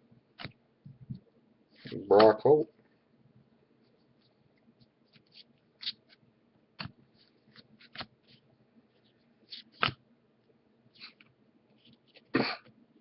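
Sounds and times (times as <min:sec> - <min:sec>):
trading cards flipped and snapping: 0:00.4 - 0:00.6, 0:05.1 - 0:06.2, 0:06.8 - 0:08.1, 0:09.5 - 0:10.0.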